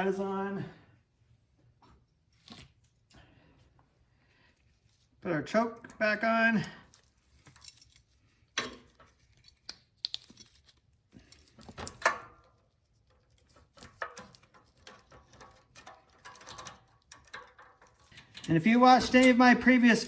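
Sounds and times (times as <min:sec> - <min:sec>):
metal clinks of tools and parts: 0:06.6 - 0:09.7, 0:13.4 - 0:20.0.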